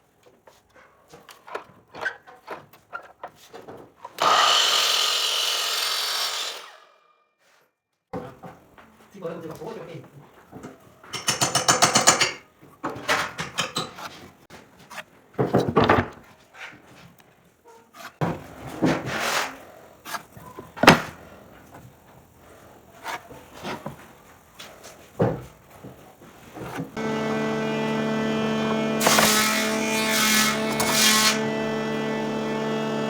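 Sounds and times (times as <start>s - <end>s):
wood knocking and scraping: 28.7s - 31.4s.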